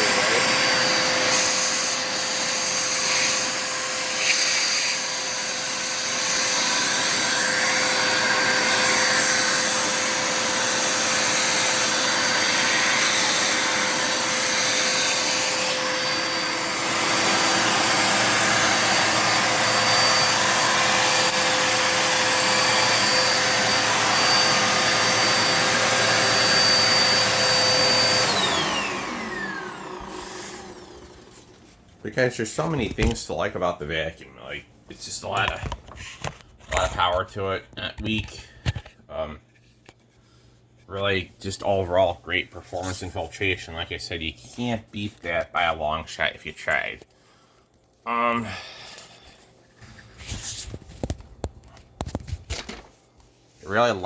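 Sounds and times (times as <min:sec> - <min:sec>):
vacuum cleaner motor whine: 0:00.0 - 0:31.7.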